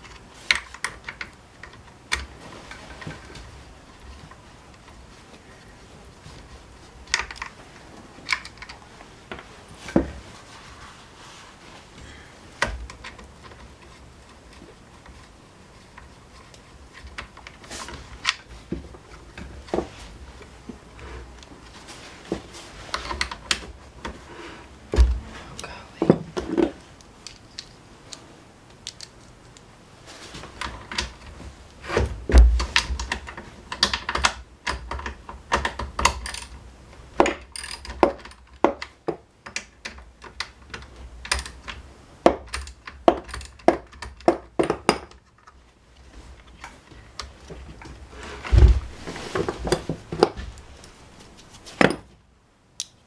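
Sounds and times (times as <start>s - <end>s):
heavy thumps: 24.8s - 26.8s, 48.2s - 50.6s
tools and small parts rattling: 32.4s - 36.6s, 37.2s - 45.6s.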